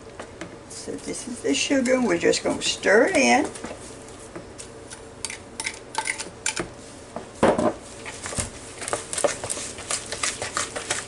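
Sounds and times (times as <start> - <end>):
utensil scraping bowl: 8.0 - 11.0.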